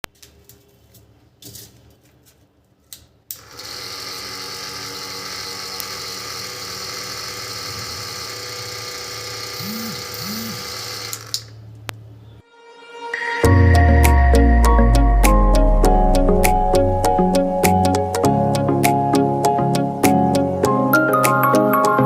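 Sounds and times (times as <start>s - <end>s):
small electric motor running: 3.4s - 11.6s.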